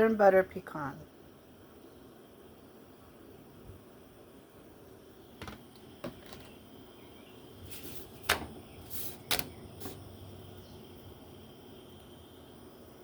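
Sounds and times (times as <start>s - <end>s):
kitchen items knocking: 5.4s - 6.5s
brief hisses: 7.7s - 10.0s.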